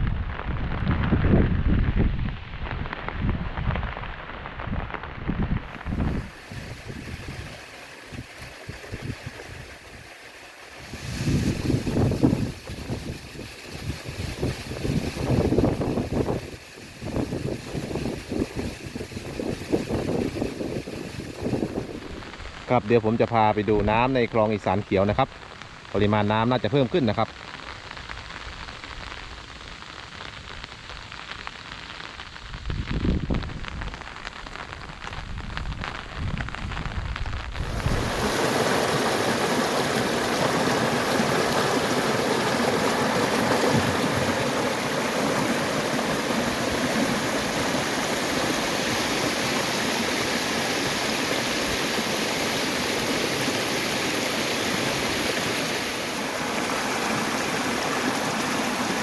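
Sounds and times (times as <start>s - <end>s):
low rumbling gusts: 0.0s - 10.0s, 10.8s - 22.7s, 34.8s - 52.0s
rain falling: 0.1s - 23.2s, 24.2s - 59.0s
rushing canal water: 5.6s - 22.4s, 37.6s - 59.0s.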